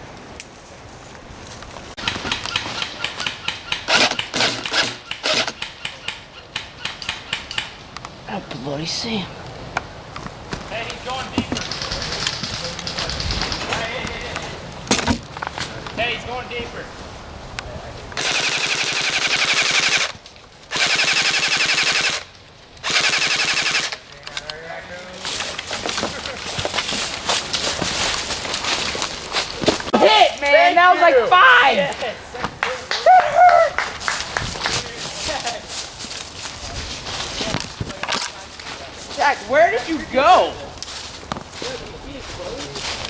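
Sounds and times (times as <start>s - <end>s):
airsoft gun full-auto bursts: 2.0s - 6.2s, 18.2s - 24.0s
footsteps crunching through dry leaves: 25.0s - 30.4s, 33.9s - 43.0s.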